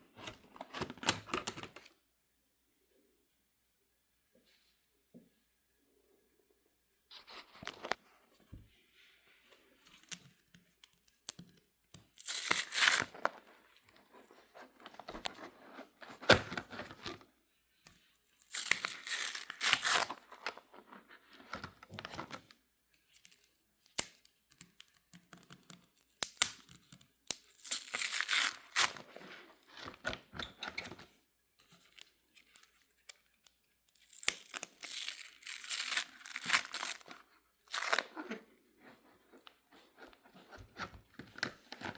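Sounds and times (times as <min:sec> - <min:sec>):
binder pages crinkling: 0:09.4 - 0:17.3, 0:18.0 - 0:41.9.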